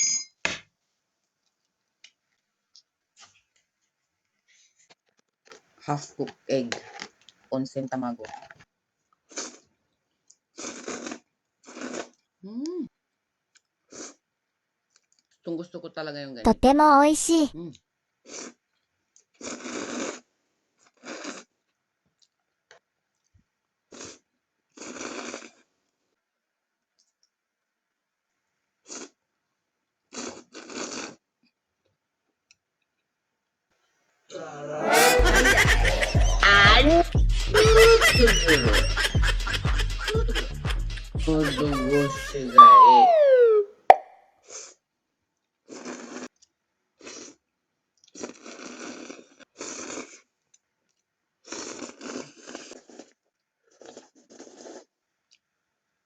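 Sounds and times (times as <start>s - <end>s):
noodles being slurped: 9.3s - 9.7s, 10.6s - 12.2s, 18.3s - 21.7s, 23.9s - 25.7s, 30.1s - 31.2s, 45.6s - 50.4s, 51.4s - 55.1s
chewing and mouth noise: 20.8s - 25.6s, 45.4s - 55.5s.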